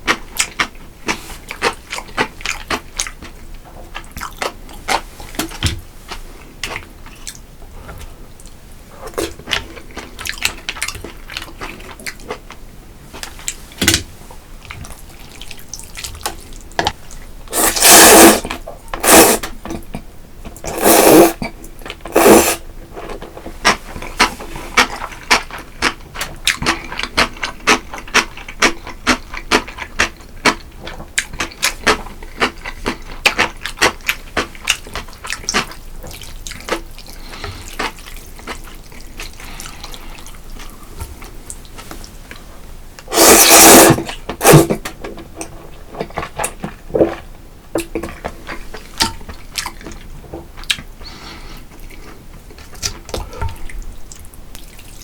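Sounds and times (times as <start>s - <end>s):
wet chewing: 0.0s - 7.4s, 8.4s - 12.6s, 14.6s - 42.4s, 43.0s - 55.0s
loud slurps: 17.5s - 19.4s, 20.7s - 21.4s, 22.1s - 22.6s, 43.1s - 44.8s.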